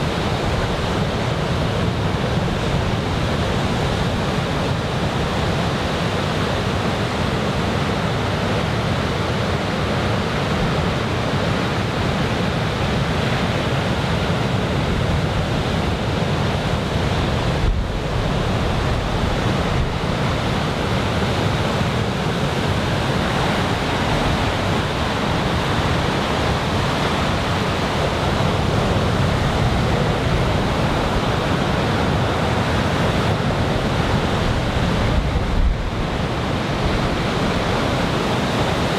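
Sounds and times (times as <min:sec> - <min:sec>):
waves breaking on beach: 0:00.0 - 0:38.9
wind buffeting microphone: 0:14.8 - 0:38.9.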